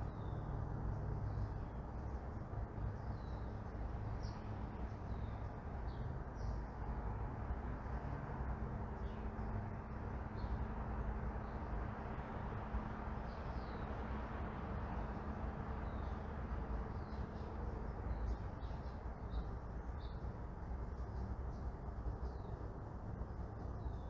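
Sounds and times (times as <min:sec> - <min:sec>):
small birds chirping: 0:00.0 - 0:06.9, 0:13.2 - 0:14.0, 0:14.9 - 0:24.0
distant traffic hum: 0:00.0 - 0:24.0.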